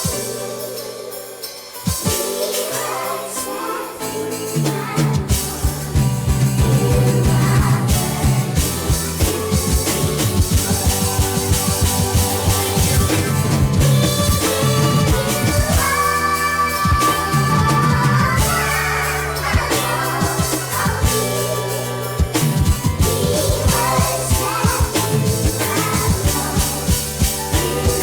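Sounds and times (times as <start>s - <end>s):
held chords: 0.0s - 28.0s
steady drum beat: 1.8s - 3.3s, 4.4s - 28.0s
person singing: 6.6s - 28.0s.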